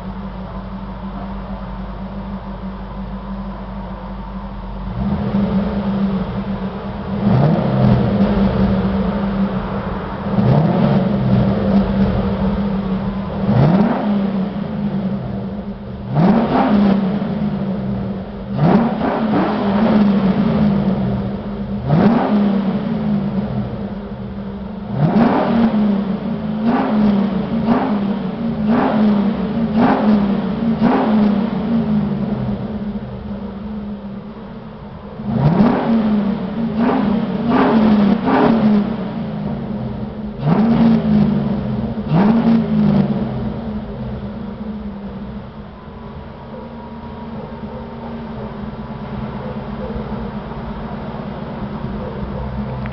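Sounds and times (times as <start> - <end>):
car engine revving and idling: 0.0 - 52.9.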